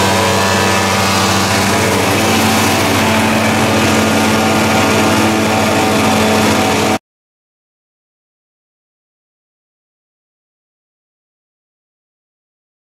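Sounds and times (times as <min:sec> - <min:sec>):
wood chipper engine running: 0:00.0 - 0:07.0.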